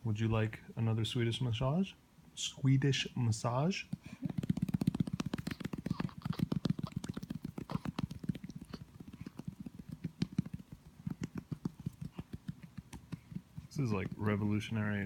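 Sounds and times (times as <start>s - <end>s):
hand patting baby's back: 4.2s - 14.4s.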